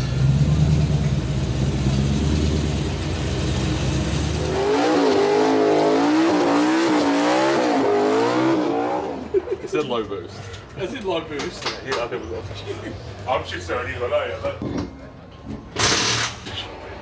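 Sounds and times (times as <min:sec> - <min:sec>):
supercharged engine revving: 0:00.0 - 0:09.2.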